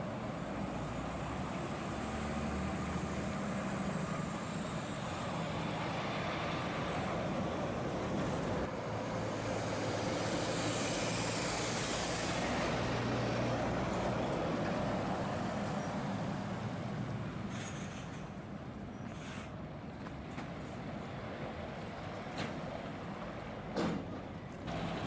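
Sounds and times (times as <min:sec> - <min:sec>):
heavy lorry passing: 0:00.0 - 0:25.0
short high hisses: 0:19.1 - 0:19.5.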